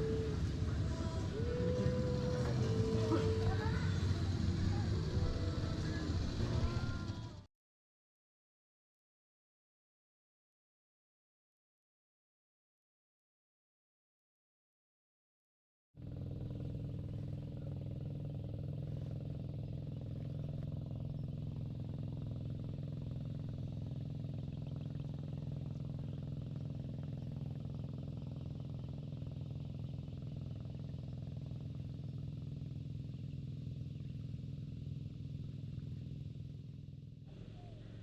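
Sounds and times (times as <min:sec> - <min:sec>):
vehicle engine humming: 0:00.0 - 0:07.5, 0:16.0 - 0:38.0.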